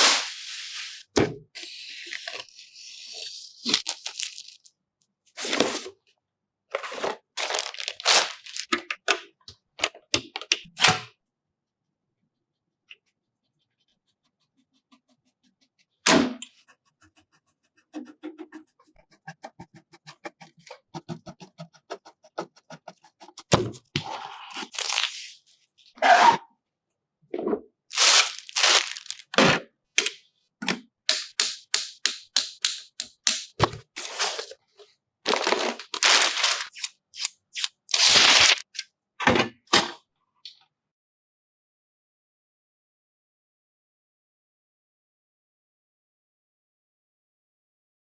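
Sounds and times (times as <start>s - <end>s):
sharp clicks and cracks: 31.1s - 33.7s.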